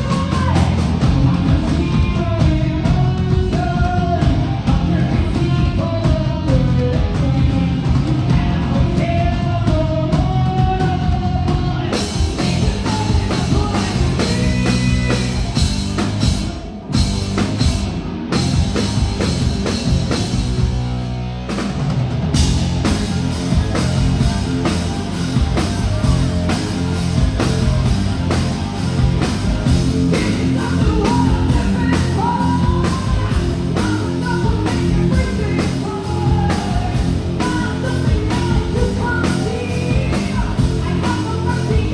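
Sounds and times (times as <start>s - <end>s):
live rock band: 0.0s - 41.9s
woman singing lead: 8.3s - 15.8s, 28.8s - 41.9s.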